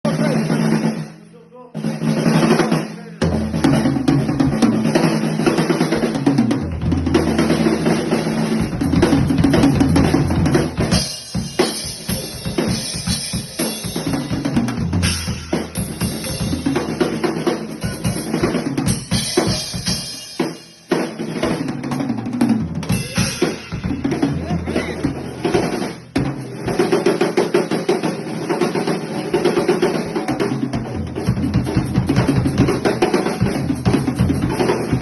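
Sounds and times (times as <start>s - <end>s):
bass drum and snare beating: 1.9s - 35.0s
cymbals: 9.6s - 21.2s, 22.8s - 27.1s.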